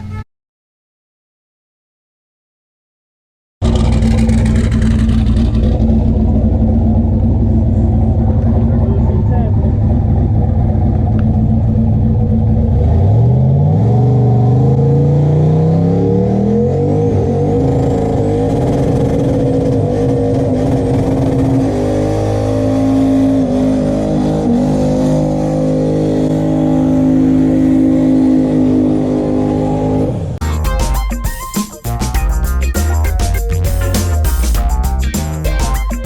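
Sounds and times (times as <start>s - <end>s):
pickup truck engine accelerating: 3.6s - 30.5s
music: 30.4s - 36.0s.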